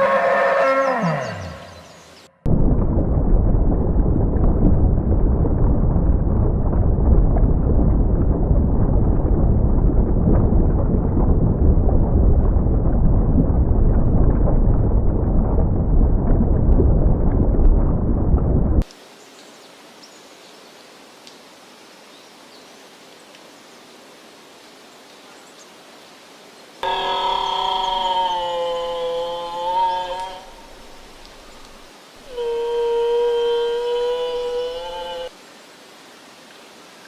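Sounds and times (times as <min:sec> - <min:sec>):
loud low rumble: 0:02.5 - 0:18.8.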